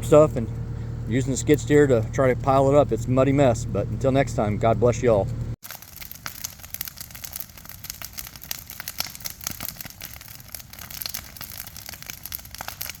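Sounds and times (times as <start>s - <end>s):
fire crackling and popping: 5.6s - 13.0s.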